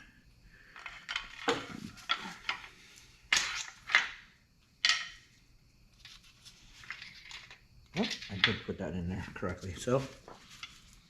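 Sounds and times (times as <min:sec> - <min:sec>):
metal parts and tools clinking: 0:00.8 - 0:02.7, 0:06.0 - 0:08.8.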